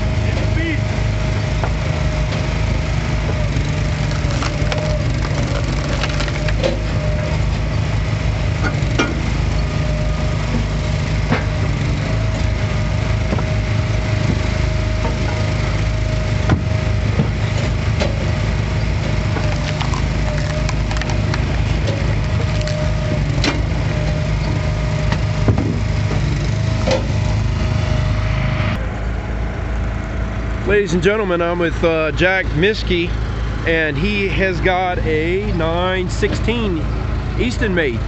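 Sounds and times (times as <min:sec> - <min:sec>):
log splitter engine whine: 0:00.0 - 0:38.0
wood cracking: 0:03.6 - 0:07.0, 0:19.0 - 0:23.8.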